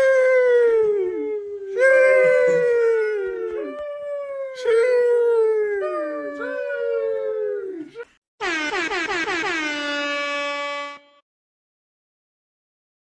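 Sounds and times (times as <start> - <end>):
dogs howling: 0.0 - 8.1.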